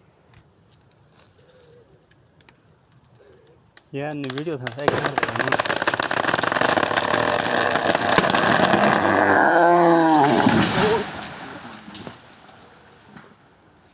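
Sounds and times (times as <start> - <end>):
wood crackling and splintering: 2.4 - 12.6.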